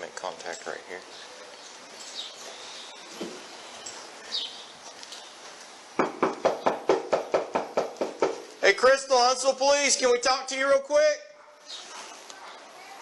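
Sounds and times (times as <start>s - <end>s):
rapid knocking on a door: 6.0s - 8.4s.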